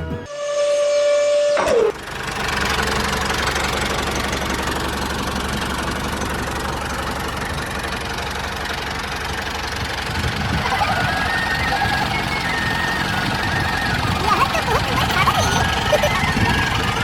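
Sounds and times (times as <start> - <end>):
short tone dropping in pitch: 0.0 - 2.0.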